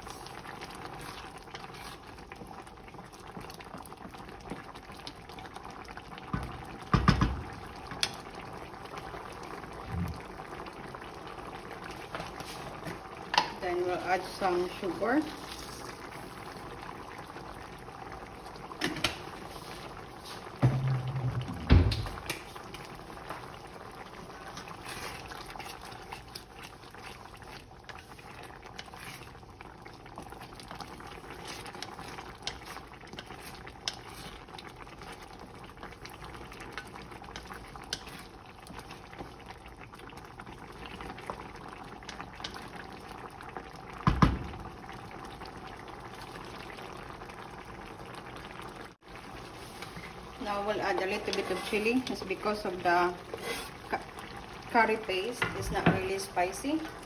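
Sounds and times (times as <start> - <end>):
curry bubbling in a pot: 0.0 - 57.0
knocks on a pot: 6.3 - 7.5, 20.6 - 22.2, 44.1 - 44.6.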